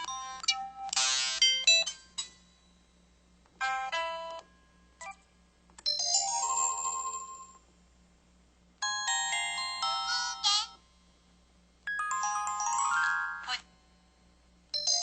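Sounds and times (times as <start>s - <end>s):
electronic phone chimes and jingles: 11.9s - 13.6s, 14.8s - 15.0s.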